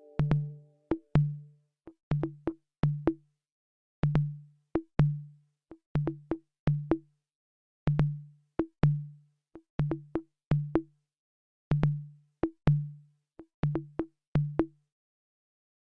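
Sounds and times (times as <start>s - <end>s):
drum machine beat: 9.8s - 10.9s.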